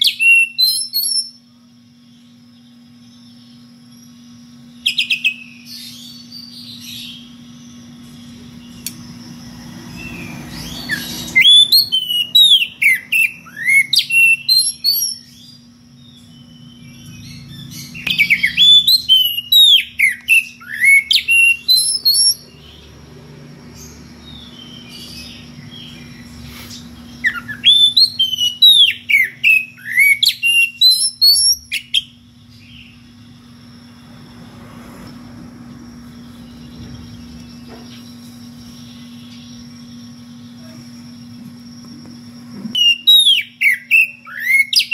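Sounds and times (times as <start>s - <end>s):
bird singing whistled phrases: 0.0s - 1.4s, 4.8s - 7.4s, 10.0s - 15.6s, 16.2s - 22.4s, 27.2s - 32.2s, 42.8s - 44.9s.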